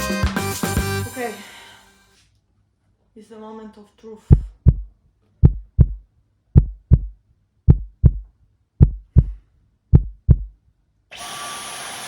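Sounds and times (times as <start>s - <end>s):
heartbeat thumps: 4.3s - 10.6s.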